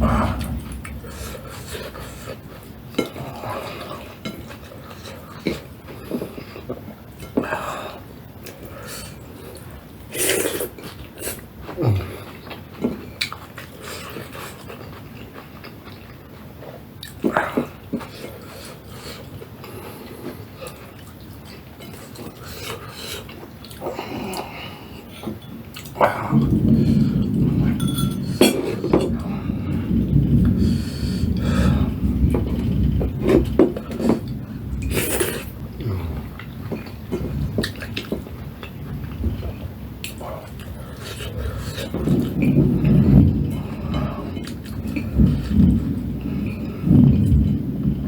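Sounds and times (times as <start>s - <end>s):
person chewing food: 0.0s - 29.0s, 32.1s - 46.0s
cutlery clinking on plate: 27.8s - 28.7s.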